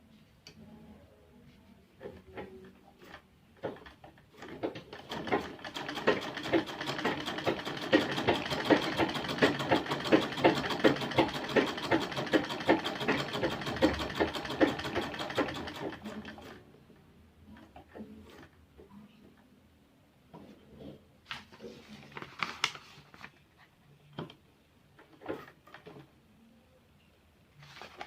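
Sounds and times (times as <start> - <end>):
sewing machine stitching: 2.4 - 16.6.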